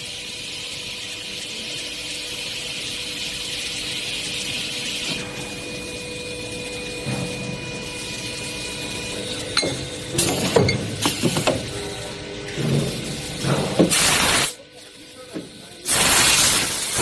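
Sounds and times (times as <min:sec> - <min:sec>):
machine high hiss: 0:13.9 - 0:14.6, 0:15.8 - 0:17.0.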